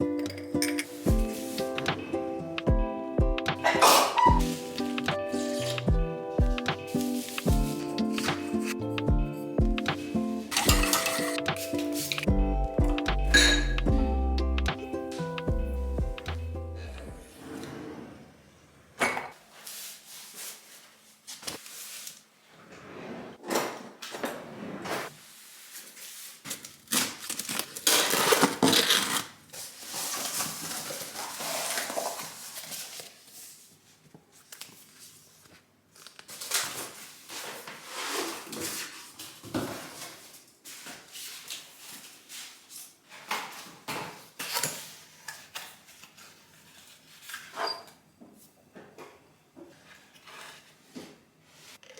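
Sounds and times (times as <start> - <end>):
kitchen items clicking and knocking: 0.0 - 2.0, 10.0 - 12.3, 13.3 - 13.9
packaging rustling and tearing: 25.7 - 33.6, 34.3 - 43.8.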